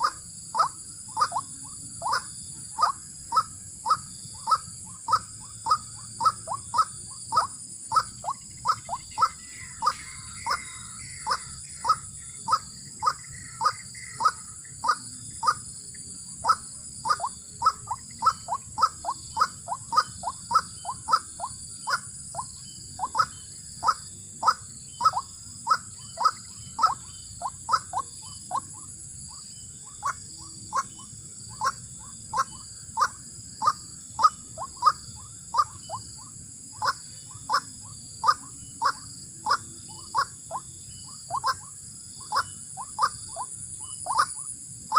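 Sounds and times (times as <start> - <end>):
waterhen calling: 0.0 - 15.6, 16.4 - 22.4, 23.0 - 28.8, 29.9 - 36.0, 36.8 - 44.5
high insect buzz: 0.0 - 44.9.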